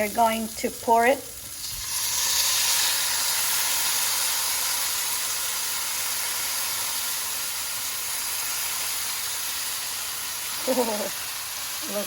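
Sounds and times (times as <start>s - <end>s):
sauce sizzling in a hot pan: 0.0s - 12.0s.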